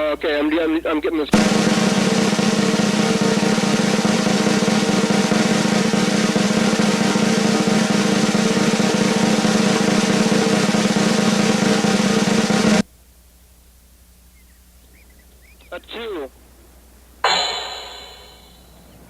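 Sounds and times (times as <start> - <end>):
snare drum roll: 1.4 - 12.9, 17.2 - 18.6.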